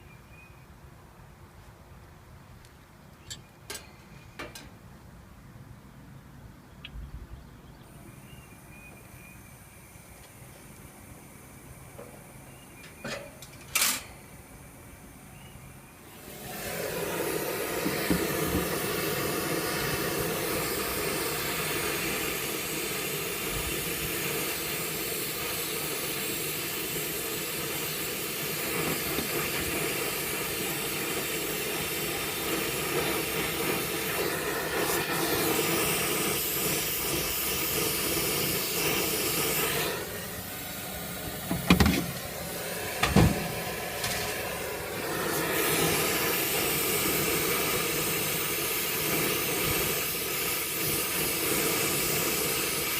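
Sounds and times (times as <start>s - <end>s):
torch flame hissing: 14.2s - 52.9s.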